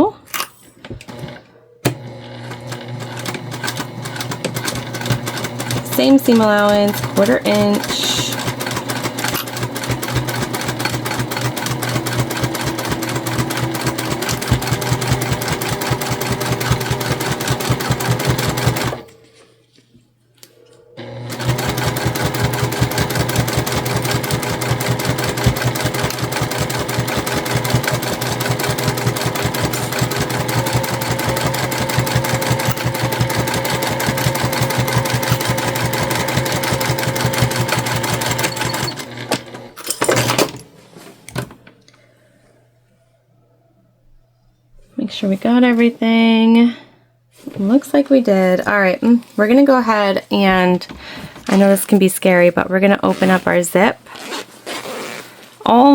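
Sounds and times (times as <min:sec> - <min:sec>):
sewing machine stitching: 0:01.0 - 0:19.1, 0:21.0 - 0:40.6.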